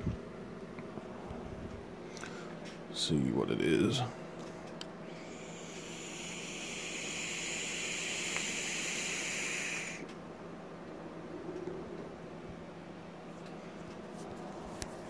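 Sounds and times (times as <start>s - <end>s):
vape coil hissing: 5.2s - 10.1s.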